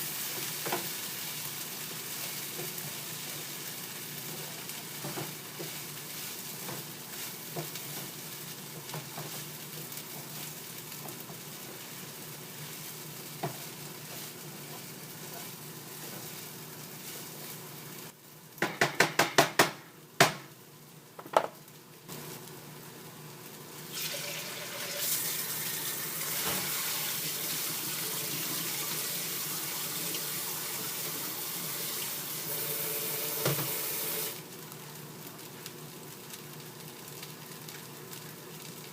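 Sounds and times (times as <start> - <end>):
food sizzling in a skillet: 0.0 - 18.6, 20.5 - 38.9
water running from a tap: 23.9 - 34.4.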